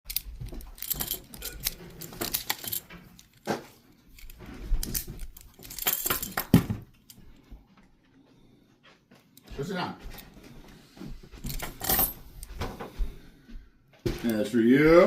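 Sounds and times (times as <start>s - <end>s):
small metal objects rattling: 0.1s - 3.4s, 4.2s - 6.7s.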